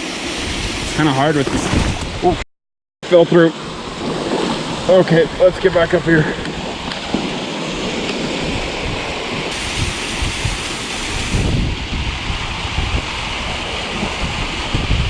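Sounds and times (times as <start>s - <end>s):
wind noise on microphone: 0.0s - 2.4s, 3.8s - 15.0s
small waterfall rushing: 5.9s - 15.0s.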